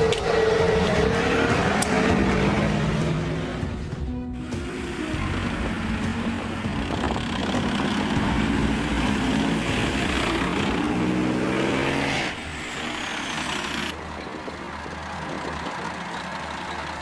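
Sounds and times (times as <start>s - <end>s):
vehicle engine running: 2.0s - 11.7s.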